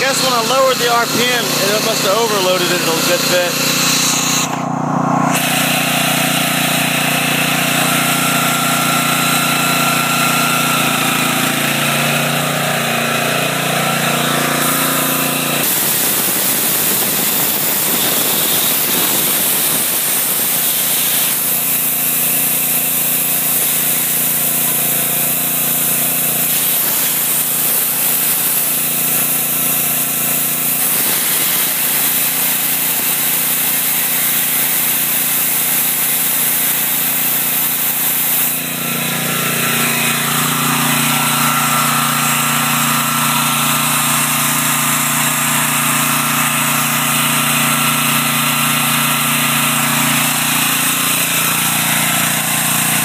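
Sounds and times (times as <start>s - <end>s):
rough noisy layer: 0.0s - 6.2s, 14.5s - 22.4s, 30.6s - 42.5s
generator engine running: 0.0s - 53.0s.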